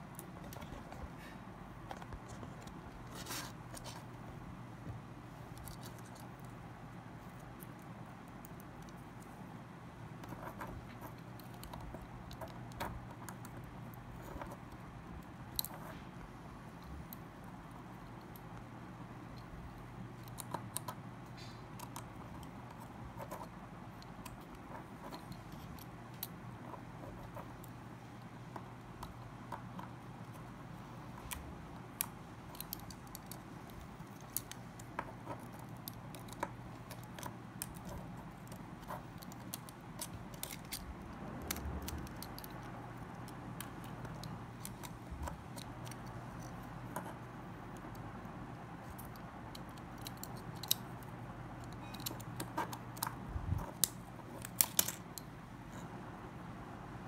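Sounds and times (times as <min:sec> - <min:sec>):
steady low hum: 0:00.0 - 0:57.0
small tools clicking and scraping: 0:31.1 - 0:48.0, 0:48.8 - 0:55.9.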